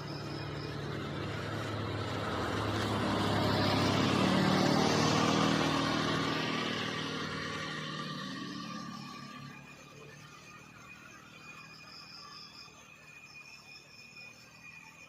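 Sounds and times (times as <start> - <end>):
motor vehicle passing by: 0.0 - 11.3.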